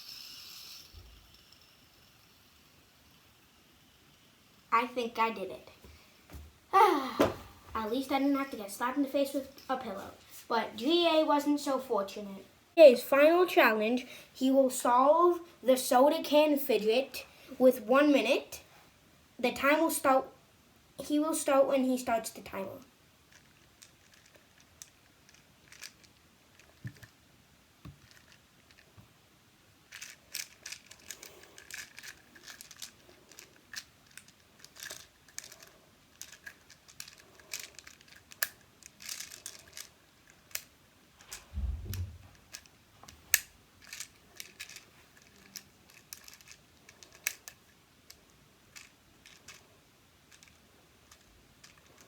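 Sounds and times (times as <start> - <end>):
plastic puzzle clicking: 29.9 - 42.7, 43.3 - 49.6, 50.3 - 52.0
dull low thump: 41.4 - 42.4.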